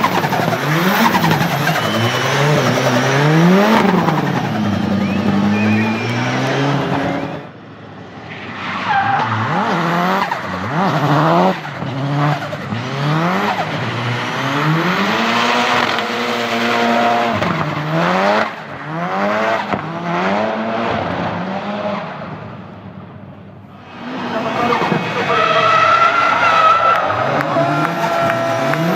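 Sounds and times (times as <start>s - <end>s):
car engine revving: 0.0s - 28.9s
tyres squealing: 24.4s - 28.9s.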